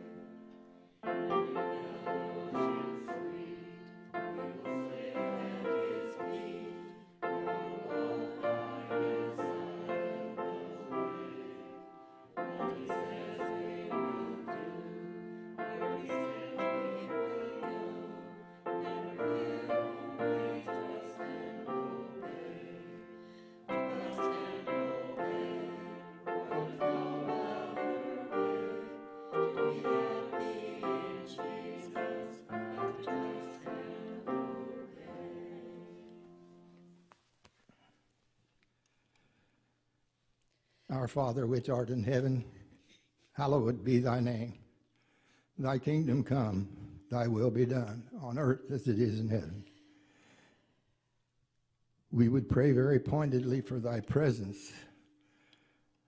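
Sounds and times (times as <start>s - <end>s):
slow instrumental music: 0.0s - 37.4s.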